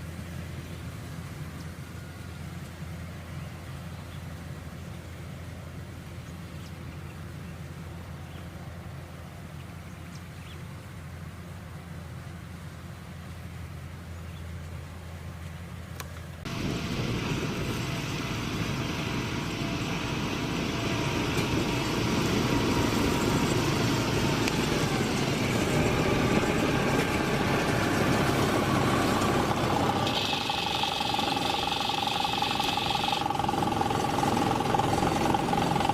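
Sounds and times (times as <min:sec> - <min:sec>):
combine harvester engine hum: 0:00.0 - 0:35.9
threshing machinery din: 0:16.5 - 0:35.9.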